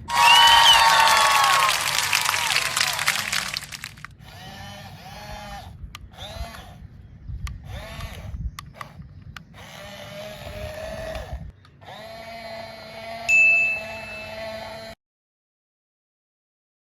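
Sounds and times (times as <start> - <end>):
small electric motors whining: 0.0 - 15.0
sharp clicks: 7.4 - 9.7.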